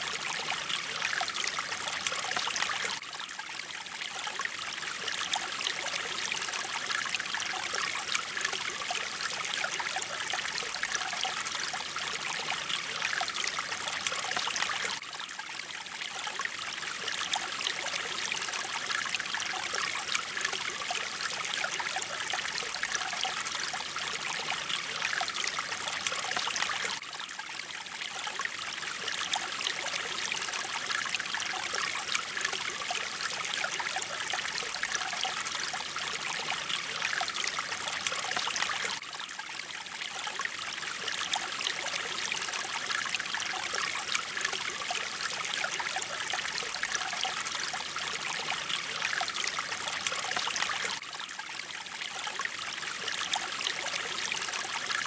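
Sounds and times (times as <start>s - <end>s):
stream water flowing: 0.0s - 55.0s.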